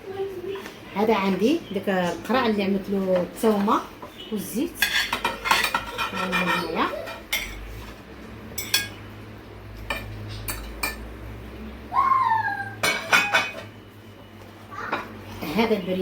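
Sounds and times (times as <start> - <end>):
metal utensils clinking on dishes: 2.0 - 4.2, 4.8 - 9.0, 9.8 - 11.2, 12.8 - 13.7.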